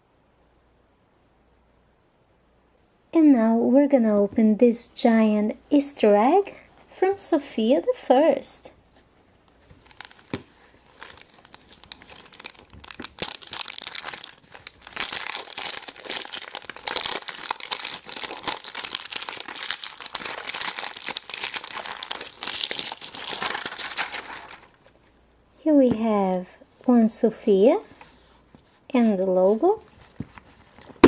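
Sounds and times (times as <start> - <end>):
wrapping crinkling and tearing: 9.7 - 25.0.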